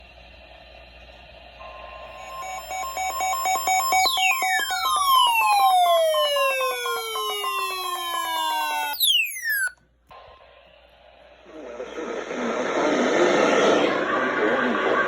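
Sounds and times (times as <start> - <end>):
electronic siren-like alert: 2.1 - 9.8
falling pitch sweep: 2.2 - 9.7
rapidly pulsing tones with clicks: 2.3 - 9.7.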